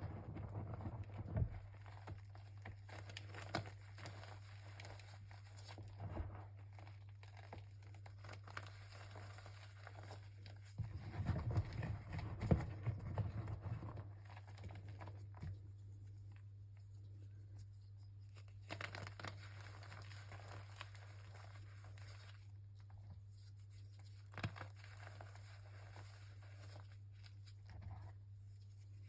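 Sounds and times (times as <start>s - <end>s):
rustling and crinkling of box: 0.0s - 15.9s
low electrical hum: 0.0s - 29.0s.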